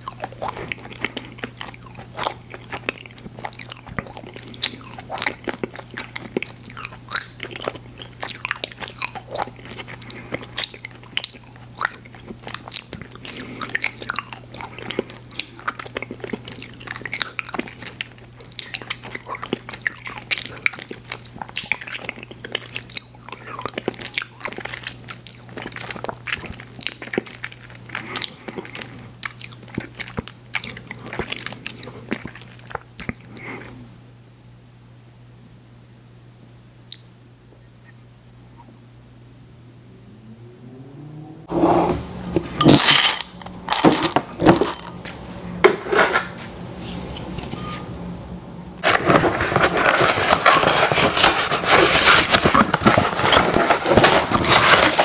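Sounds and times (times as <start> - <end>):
chewing candy crackly clicks: 0.0 - 33.3
steady low hum: 33.3 - 54.5.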